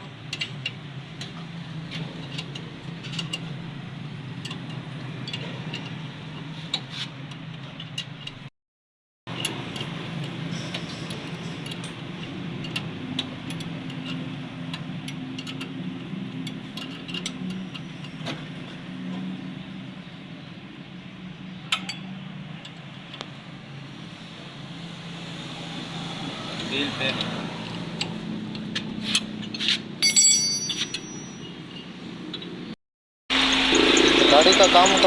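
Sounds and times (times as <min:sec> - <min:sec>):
metal tools clinking: 0:29.0 - 0:32.5.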